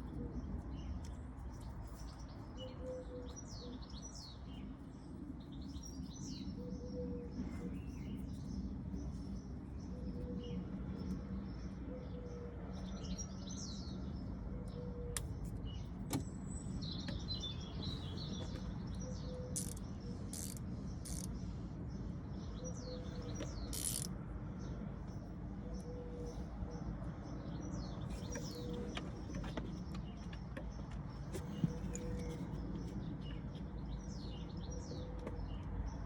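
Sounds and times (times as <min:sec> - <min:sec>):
small birds chirping and trilling: 0:00.0 - 0:36.0
sharp clicks: 0:19.6 - 0:21.3, 0:23.4 - 0:24.1.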